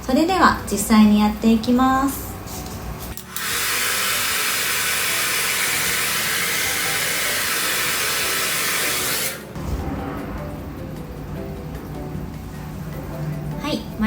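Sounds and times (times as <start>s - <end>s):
hair dryer blowing: 3.2s - 9.6s.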